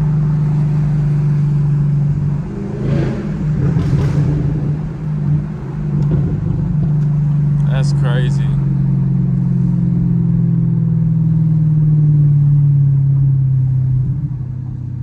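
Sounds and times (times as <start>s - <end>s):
car exhaust droning: 0.0s - 15.0s
exhaust pops and crackles: 3.5s - 8.6s.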